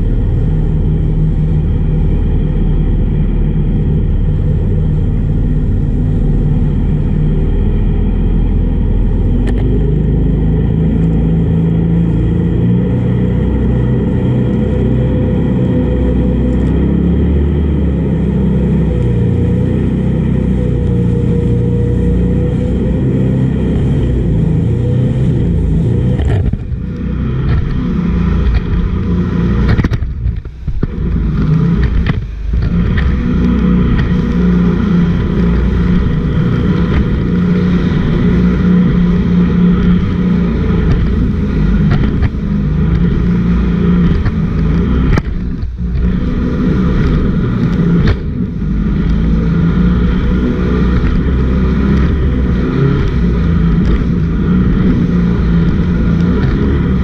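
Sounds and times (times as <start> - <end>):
boat engine droning: 0.0 - 57.0
rushing air and water: 0.0 - 57.0.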